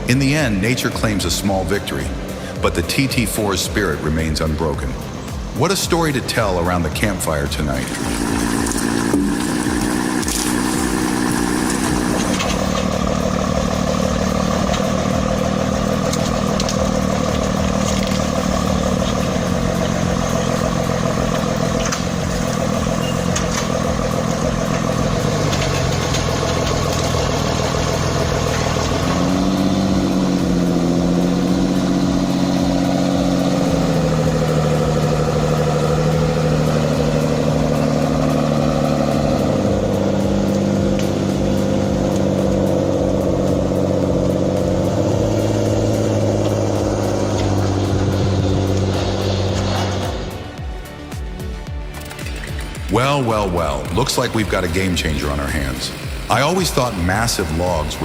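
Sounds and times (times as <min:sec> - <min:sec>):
large engine running under load: 0:00.0 - 0:58.0.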